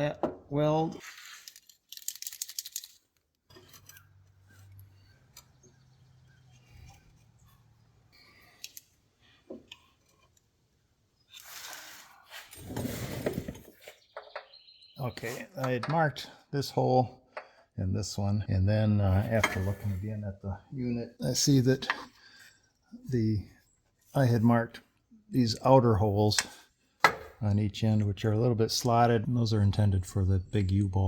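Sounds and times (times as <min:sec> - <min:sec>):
small metal parts jangling: 0:01.3 - 0:03.0.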